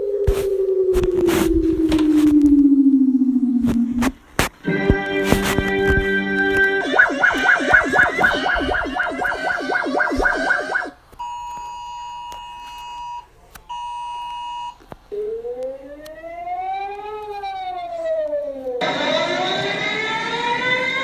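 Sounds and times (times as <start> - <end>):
steady electronic tone: 0.0 - 11.0
rapidly pulsing alarm tone: 4.7 - 11.0
rising and falling siren tone: 4.7 - 11.0, 15.1 - 21.0.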